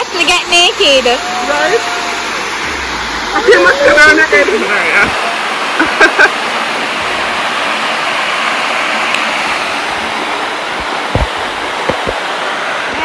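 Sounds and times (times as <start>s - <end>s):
waterfall rushing into pool: 0.0s - 13.0s
low thump: 11.1s - 12.2s.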